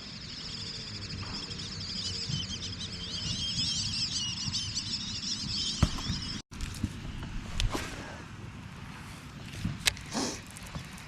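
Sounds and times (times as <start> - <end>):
small birds chirping: 0.0 - 6.4.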